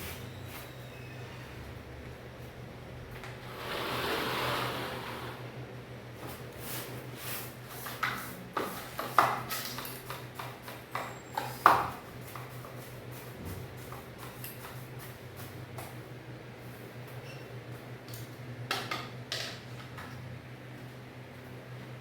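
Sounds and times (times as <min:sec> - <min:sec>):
steady low hum: 0:00.0 - 0:07.8.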